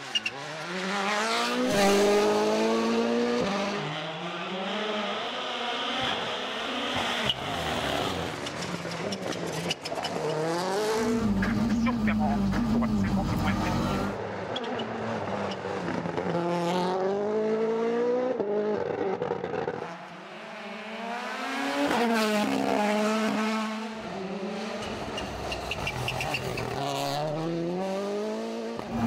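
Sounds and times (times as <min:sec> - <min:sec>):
rally car engines revving: 0:00.0 - 0:29.0.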